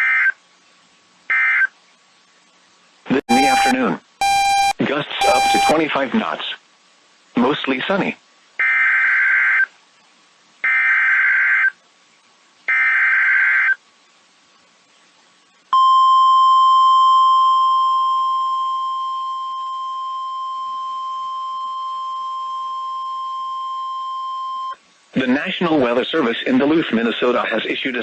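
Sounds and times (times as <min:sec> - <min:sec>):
steady warning alarm tone: 0:03.3 - 0:05.8
warbling data tones: 0:03.3 - 0:05.8.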